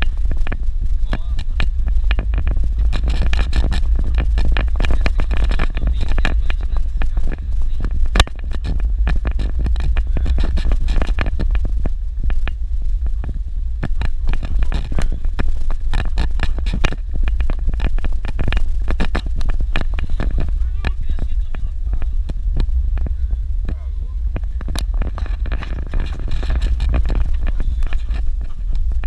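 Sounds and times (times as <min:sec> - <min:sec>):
knocks and rattles: 0:00.0 - 0:29.0
vehicle rumbling on dirt road: 0:00.0 - 0:29.0.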